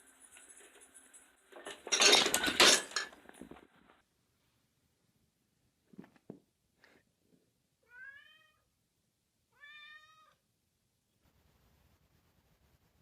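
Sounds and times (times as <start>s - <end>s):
cat meowing: 7.8s - 8.7s, 9.5s - 10.4s.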